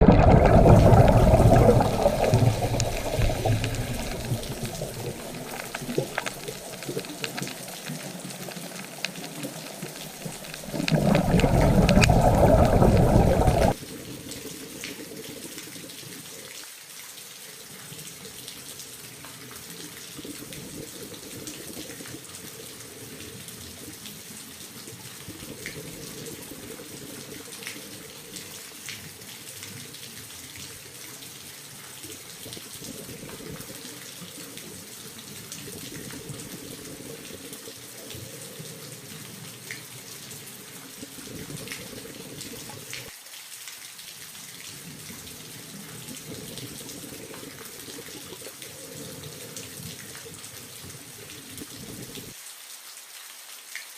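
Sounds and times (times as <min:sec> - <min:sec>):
water trickling: 0:00.0 - 0:16.4, 0:17.7 - 0:52.4
water pouring and splashing: 0:00.0 - 0:52.4
small clicks: 0:02.2 - 0:13.7.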